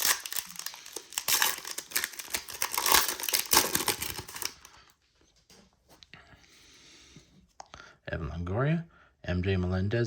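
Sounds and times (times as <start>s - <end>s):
foil wrapper crinkling and tearing: 0.0s - 4.9s.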